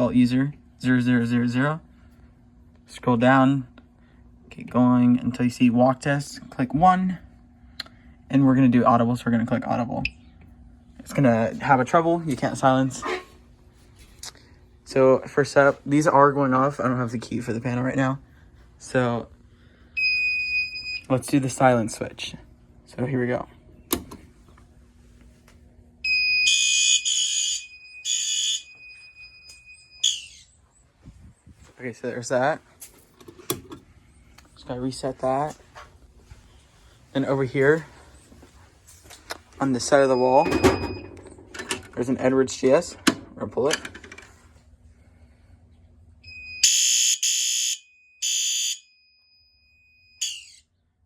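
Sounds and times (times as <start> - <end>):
fire alarm horn blasts: 26.0 - 30.6, 46.2 - 50.7
high-pitched electronic tone: 50.0 - 50.6.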